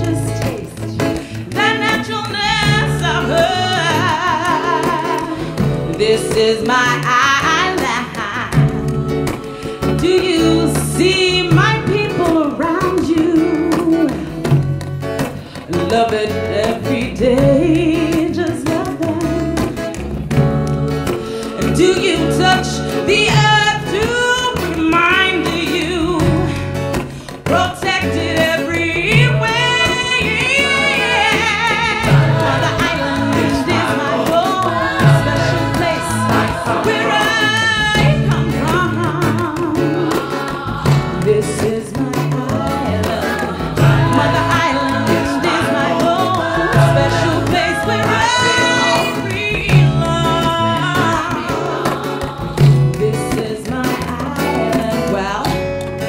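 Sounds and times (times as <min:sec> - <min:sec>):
song with singing and guitar: 0:00.0 - 0:56.0.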